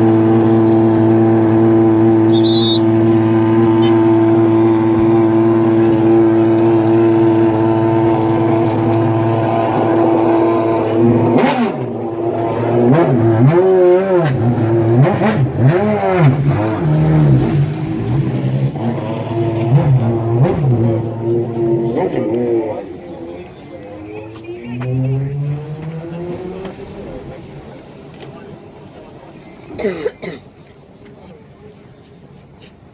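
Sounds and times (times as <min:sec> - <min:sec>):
car engine revving: 0:00.0 - 0:29.8
exhaust cracks: 0:00.0 - 0:30.4.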